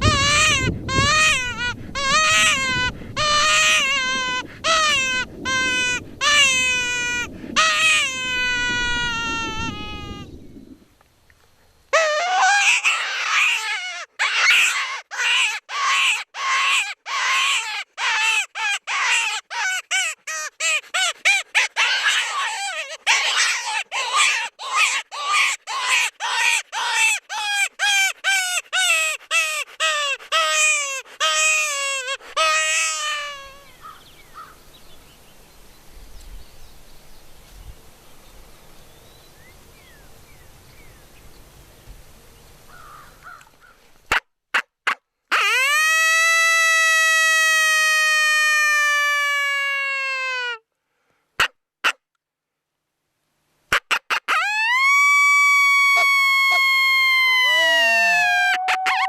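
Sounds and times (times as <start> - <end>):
predator call distress cries: 0.0 - 10.3, 11.9 - 34.6, 45.3 - 50.5, 54.3 - 59.0
faint open-air background: 0.0 - 59.0.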